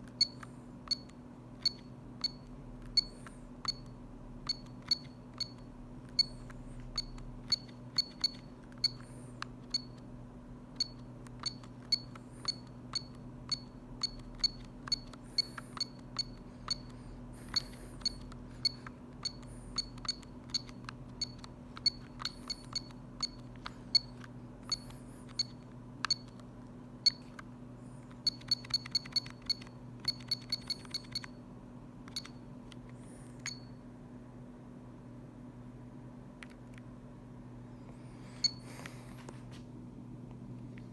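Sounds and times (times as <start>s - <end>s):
high keypad beeps: 0.2s - 6.4s, 7.0s - 9.0s, 9.7s - 10.0s, 10.8s - 16.9s, 17.5s - 26.4s, 28.2s - 31.3s.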